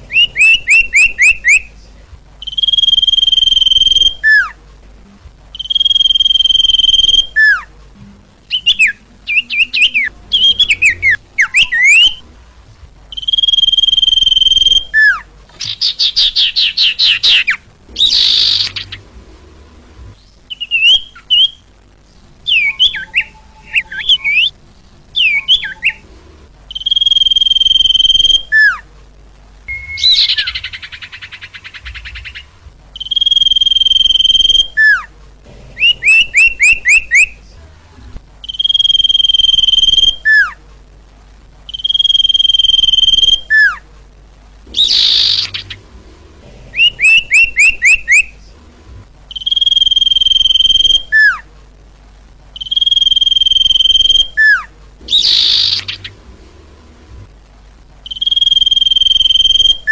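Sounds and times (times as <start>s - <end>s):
bird chirps and trill: 0.0s - 1.8s, 2.4s - 4.6s, 5.5s - 7.7s, 8.5s - 12.2s, 13.1s - 19.1s, 20.2s - 21.7s, 22.4s - 24.6s, 25.2s - 26.0s, 26.7s - 28.8s, 29.7s - 35.1s, 35.8s - 37.4s, 38.4s - 40.6s, 41.7s - 43.8s, 44.7s - 45.8s, 46.8s - 48.3s, 49.3s - 51.4s, 52.6s - 56.2s, 58.0s - 59.9s
bird whistling long notes: 0.1s - 1.7s, 2.4s - 4.6s, 5.5s - 7.7s, 8.5s - 12.2s, 13.1s - 19.0s, 20.5s - 21.6s, 22.5s - 24.6s, 25.2s - 26.0s, 26.7s - 28.8s, 29.7s - 35.1s, 35.8s - 37.4s, 38.4s - 40.6s, 41.7s - 43.8s, 44.7s - 45.8s, 46.8s - 48.3s, 49.3s - 51.4s, 52.6s - 56.1s, 58.0s - 59.9s.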